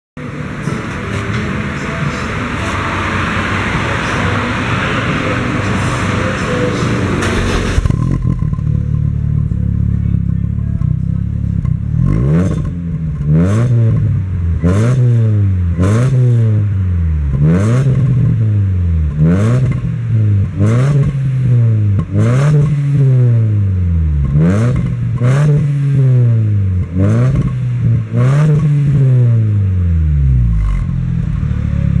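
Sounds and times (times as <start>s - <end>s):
car engine idling and revving: 0.1s - 32.0s
loud rushing noise: 0.2s - 9.4s.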